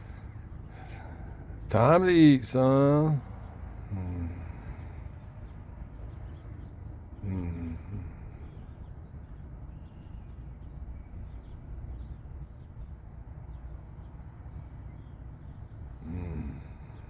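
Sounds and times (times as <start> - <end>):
low outdoor rumble: 0.0 - 17.0
faint bird chirps: 4.3 - 17.0.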